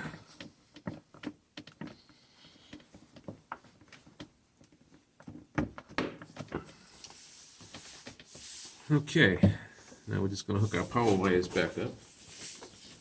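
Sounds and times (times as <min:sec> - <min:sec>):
hands clicking and tapping wiring: 0:00.0 - 0:08.3.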